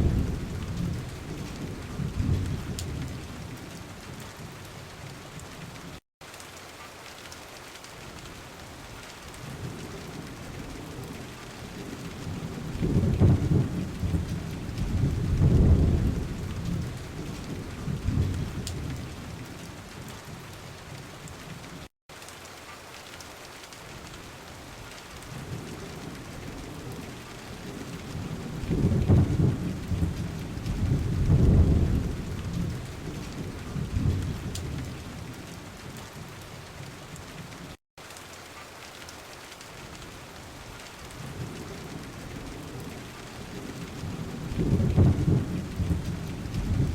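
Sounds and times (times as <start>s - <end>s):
low rolls of thunder: 0.0s - 5.9s, 9.3s - 21.2s, 25.2s - 37.1s, 41.1s - 46.9s
steady rain: 0.0s - 46.9s.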